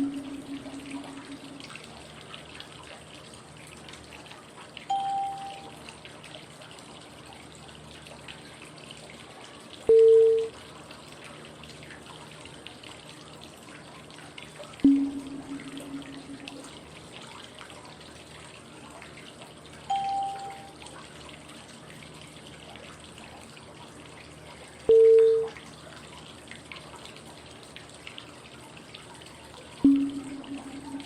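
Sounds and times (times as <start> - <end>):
short beeps: 0.0 - 1.7, 4.9 - 5.8, 9.9 - 10.5, 14.8 - 16.8, 19.9 - 20.7, 24.9 - 25.5, 29.8 - 31.0
low ringing tone: 0.0 - 1.8, 4.9 - 5.8, 9.9 - 10.5, 14.8 - 16.9, 19.9 - 20.8, 24.9 - 25.6, 29.8 - 31.0
flowing water white noise: 0.0 - 3.6, 4.8 - 6.4, 14.8 - 17.0, 19.6 - 21.9, 29.8 - 31.0.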